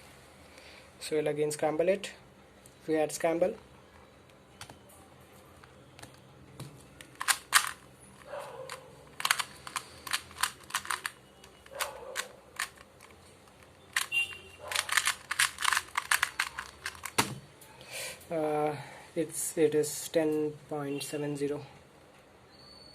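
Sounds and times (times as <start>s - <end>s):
rapid plastic clicks of puzzle cube: 7.0s - 17.4s.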